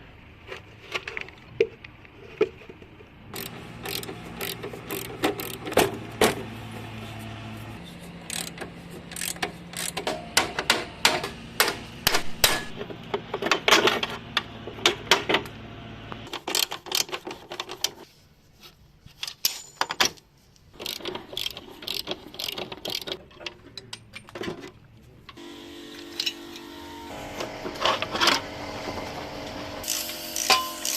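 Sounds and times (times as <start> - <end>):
hand tools clinking on metal: 19.2 - 20.2, 29.9 - 30.9.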